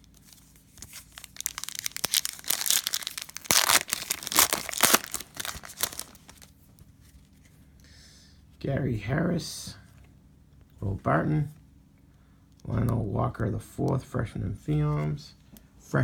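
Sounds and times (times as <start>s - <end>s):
cellophane wrapper crinkling: 0.0s - 6.5s.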